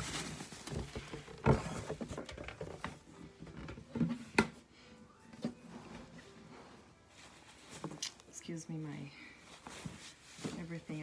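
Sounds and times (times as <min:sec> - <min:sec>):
fabric bag rustling: 0:00.0 - 0:02.1, 0:05.6 - 0:11.0.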